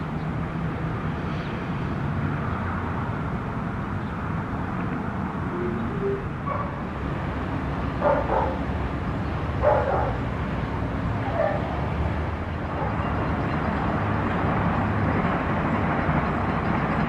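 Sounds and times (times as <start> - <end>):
dog barking: 8.0 - 8.6, 9.6 - 10.2, 11.3 - 11.7.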